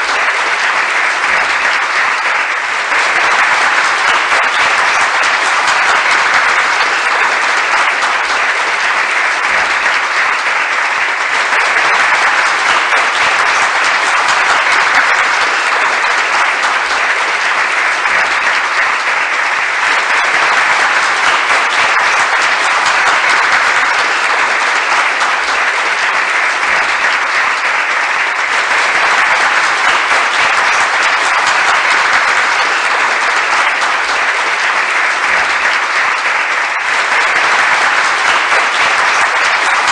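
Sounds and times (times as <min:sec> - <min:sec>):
large crowd applauding: 0:00.0 - 0:39.9.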